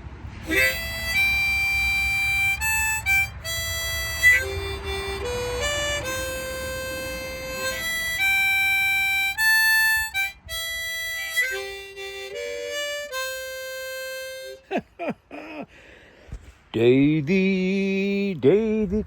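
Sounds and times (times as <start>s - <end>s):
harmonica playing slow melody: 0.4s - 14.9s.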